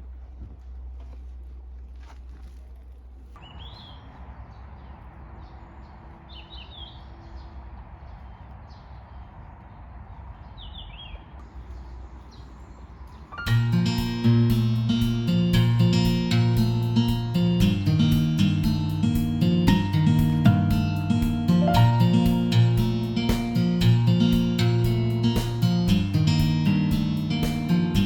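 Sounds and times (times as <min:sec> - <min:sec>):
small birds chirping: 0:03.2 - 0:28.0
outdoor background hiss: 0:11.4 - 0:28.0
acoustic guitar music: 0:13.4 - 0:28.0.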